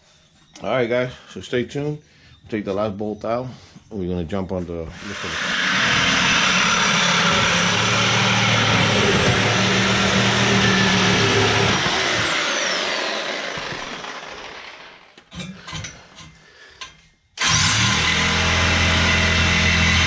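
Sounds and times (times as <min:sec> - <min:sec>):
motor-driven machine whining: 0:04.9 - 0:15.2.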